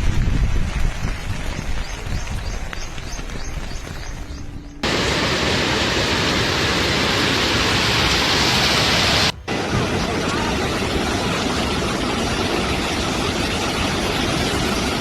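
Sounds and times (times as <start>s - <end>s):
loud rush of water: 4.8s - 15.0s.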